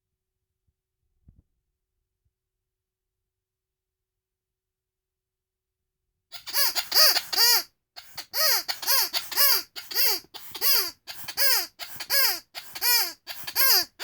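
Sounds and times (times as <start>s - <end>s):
rubber squeaky toy squeaking: 6.3s - 14.0s.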